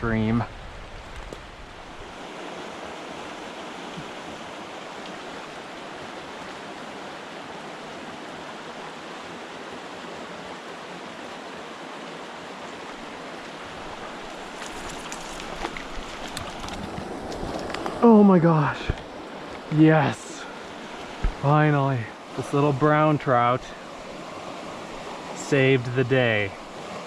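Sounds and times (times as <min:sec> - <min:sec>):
stream rushing over rocks: 0:00.1 - 0:27.0.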